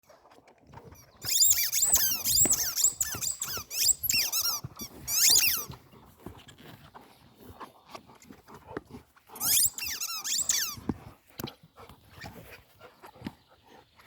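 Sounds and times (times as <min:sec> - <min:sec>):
rubber dog toys squeaking: 0:01.0 - 0:05.8, 0:09.3 - 0:10.9.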